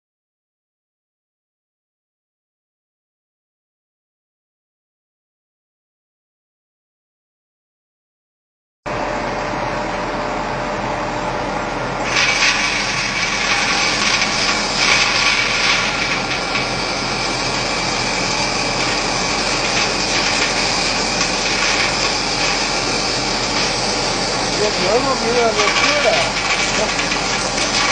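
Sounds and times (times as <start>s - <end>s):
electric mill motor grinding: 11.9s - 27.9s.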